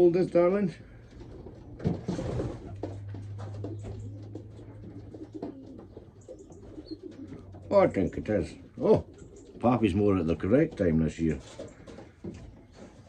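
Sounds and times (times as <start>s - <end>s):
pigeons cooing: 0.0s - 13.0s
rustling and light clicks: 1.1s - 7.7s.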